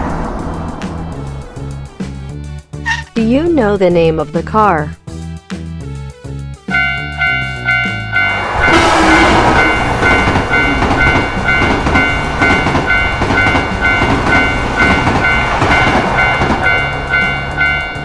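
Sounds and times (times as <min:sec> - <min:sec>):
railroad crossing bell ringing: 0:06.7 - 0:18.0
train wheels clattering on rails: 0:08.8 - 0:18.0.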